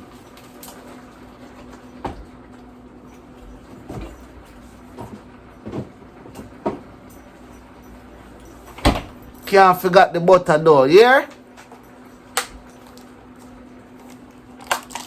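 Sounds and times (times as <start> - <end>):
kitchen knocks and clunks: 3.5 - 7.0.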